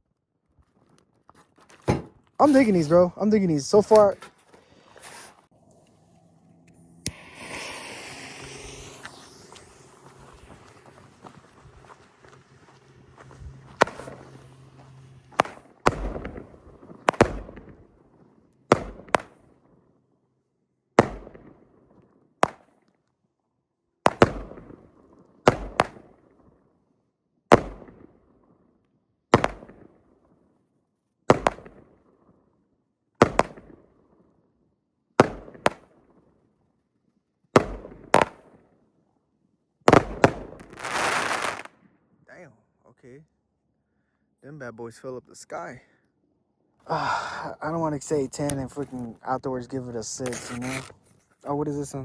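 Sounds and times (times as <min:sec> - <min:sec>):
firework reports: 0:02.4 - 0:04.3, 0:06.7 - 0:17.9, 0:39.9 - 0:41.7, 0:47.0 - 0:52.0.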